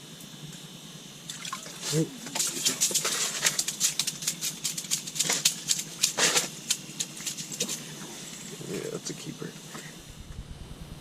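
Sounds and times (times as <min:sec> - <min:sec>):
fish slapping on ice: 0:01.3 - 0:07.9.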